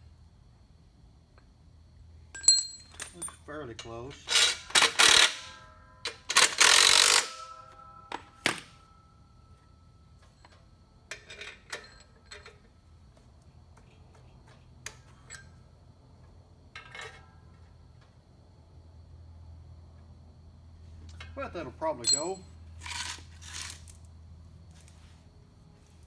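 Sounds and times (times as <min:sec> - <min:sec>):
clinks of steel parts and tools: 0:02.3 - 0:09.0, 0:10.2 - 0:12.8, 0:14.1 - 0:15.7, 0:16.7 - 0:17.6, 0:22.0 - 0:24.0.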